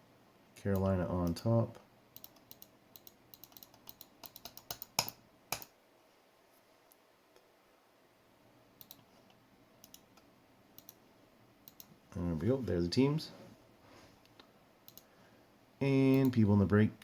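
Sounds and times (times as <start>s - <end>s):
computer mouse clicks: 2.2s - 5.7s, 8.8s - 11.0s, 11.6s - 11.9s, 14.2s - 15.1s.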